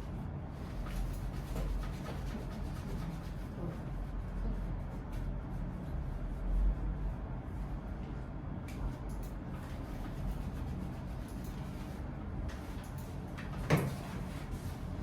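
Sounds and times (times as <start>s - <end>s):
low room hum: 0.0s - 15.0s.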